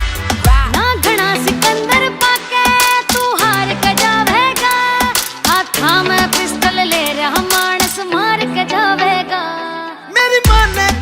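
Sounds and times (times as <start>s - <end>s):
drum beat: 0.0s - 8.1s, 10.5s - 11.0s
person singing: 0.4s - 11.0s.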